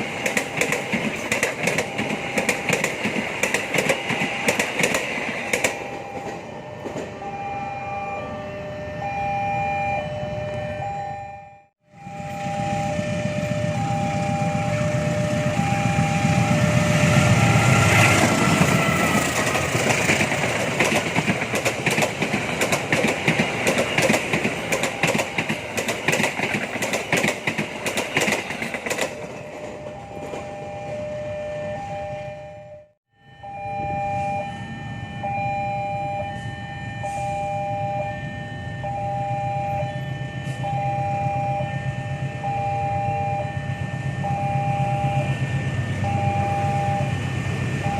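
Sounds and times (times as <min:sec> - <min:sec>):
train rumbling: 0:00.0 - 0:09.2, 0:12.0 - 0:32.4, 0:38.2 - 0:47.9
two-tone warning alarm beeping: 0:00.0 - 0:47.9
wheels clattering over rail joints: 0:18.0 - 0:30.9.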